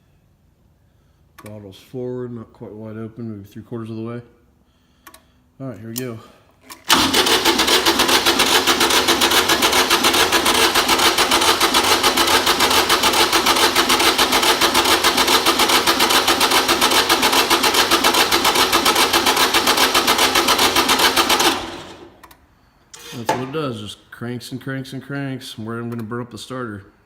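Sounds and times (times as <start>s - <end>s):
diesel engine cranking: 6.6s - 22.2s.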